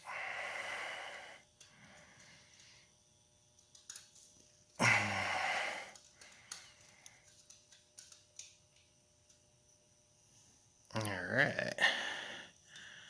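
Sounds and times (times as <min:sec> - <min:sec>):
faint clicks and taps: 0:01.6 - 0:02.8, 0:03.5 - 0:04.8, 0:05.9 - 0:09.5
person sighing: 0:04.8 - 0:06.0, 0:11.6 - 0:12.5.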